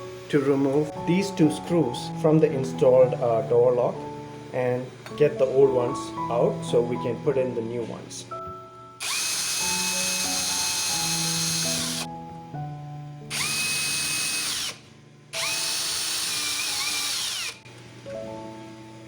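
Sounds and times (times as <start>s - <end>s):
background music: 0.0s - 19.0s
power drill whining: 9.0s - 12.1s, 13.3s - 17.6s.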